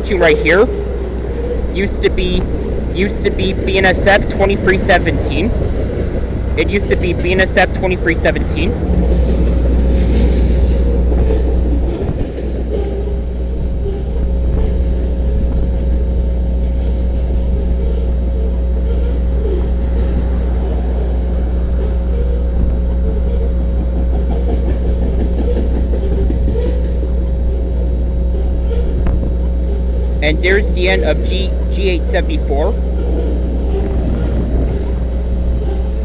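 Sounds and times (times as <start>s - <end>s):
diesel locomotive rumble: 0.0s - 36.0s
freight train rolling past: 0.7s - 13.5s.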